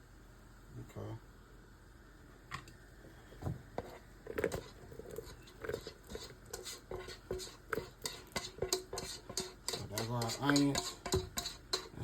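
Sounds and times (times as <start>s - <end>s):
utensil tapping on cookware: 5.6s - 12.0s.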